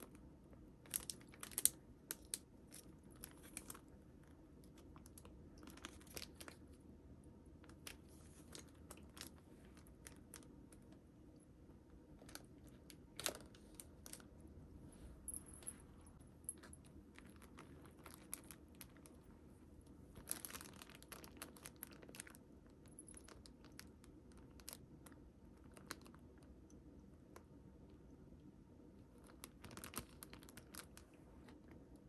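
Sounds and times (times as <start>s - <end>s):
packaging crinkling and clicks: 20.2s - 22.4s, 29.2s - 31.8s.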